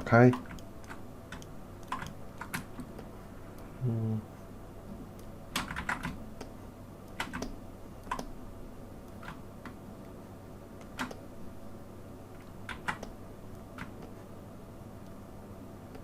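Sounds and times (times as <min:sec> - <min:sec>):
low electrical hum: 0:00.0 - 0:16.0
keyboard keystrokes: 0:00.3 - 0:03.1, 0:05.5 - 0:06.5, 0:07.1 - 0:08.3, 0:10.8 - 0:11.2, 0:12.7 - 0:13.2.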